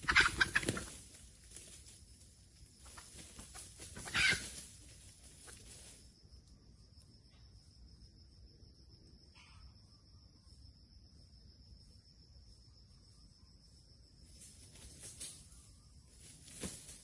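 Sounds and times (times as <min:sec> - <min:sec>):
bird scuffling and flapping: 0:00.1 - 0:02.0, 0:16.2 - 0:17.0.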